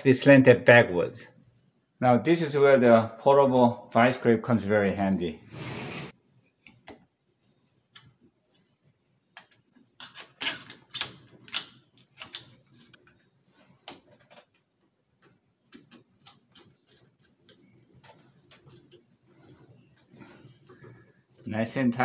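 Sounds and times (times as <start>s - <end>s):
clicks and knocks of fitting: 13.8s - 19.0s.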